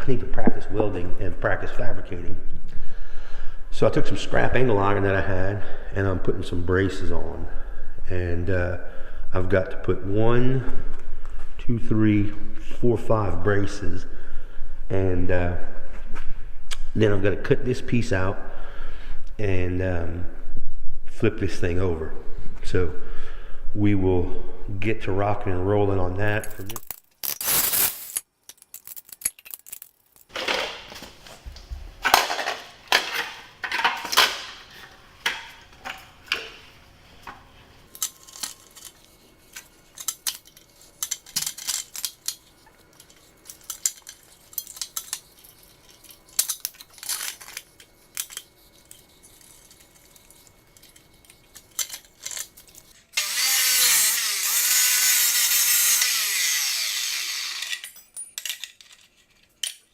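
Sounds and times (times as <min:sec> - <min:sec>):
power tool cutting metal: 0:53.2 - 0:57.9.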